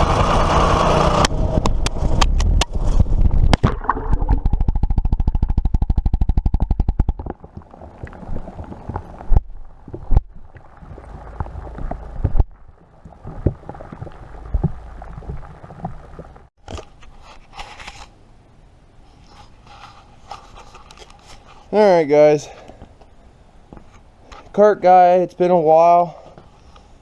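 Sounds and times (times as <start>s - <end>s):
small engine running: 0.0s - 1.7s.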